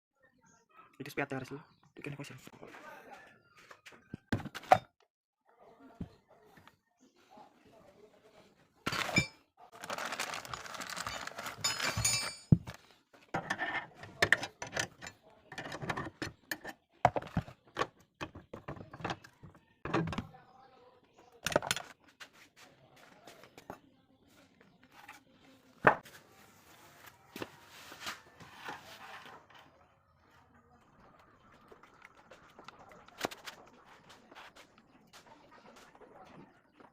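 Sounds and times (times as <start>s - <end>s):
metal tools clinking and knocking: 8.9s - 9.4s, 10.3s - 12.8s, 13.4s - 16.8s
metal parts rattling: 8.9s - 12.7s.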